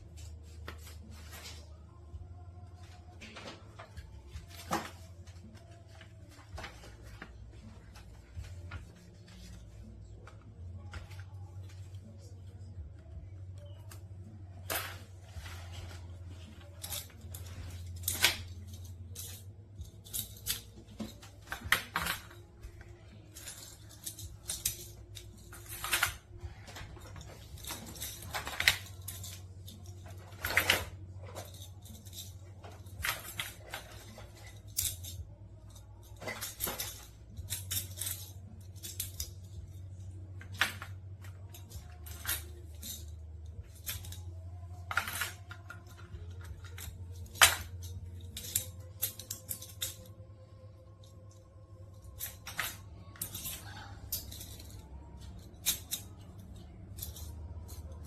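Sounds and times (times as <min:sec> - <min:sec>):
plastic blocks clicking and clattering: 0:23.4 - 0:50.1.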